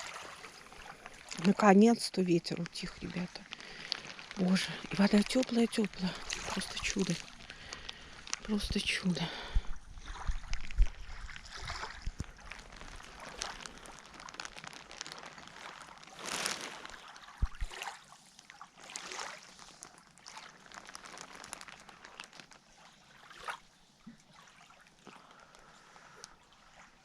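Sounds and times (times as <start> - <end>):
lake water sloshing and splashing: 0.0 - 27.0.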